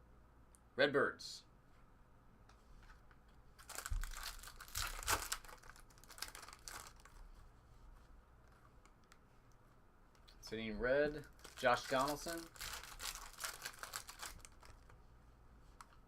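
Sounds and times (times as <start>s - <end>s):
foil wrapper tearing and crinkling: 3.6s - 7.2s, 11.2s - 14.9s.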